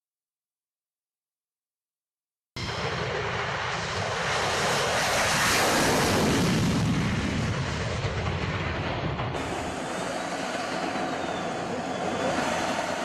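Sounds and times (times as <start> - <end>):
military aircraft engine rushing: 2.6 - 13.0.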